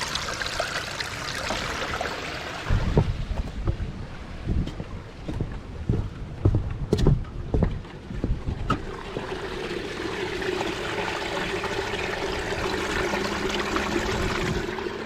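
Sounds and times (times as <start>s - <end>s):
running water rushing: 0.0s - 3.6s, 8.8s - 15.0s
wind buffeting microphone: 2.6s - 9.2s.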